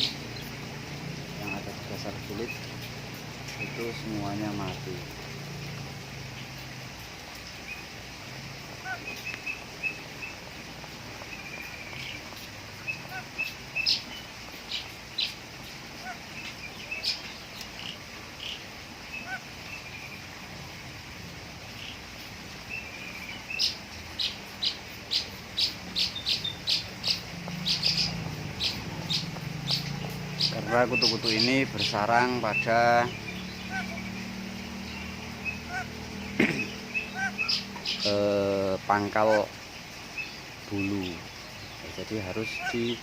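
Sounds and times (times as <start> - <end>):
parrot chirping: 22.8 - 38.1.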